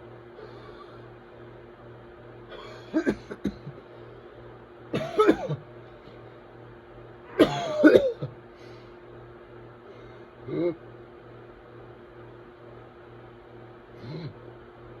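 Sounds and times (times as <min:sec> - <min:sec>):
person coughing harshly: 0:02.6 - 0:03.8, 0:05.0 - 0:05.6, 0:07.3 - 0:08.4.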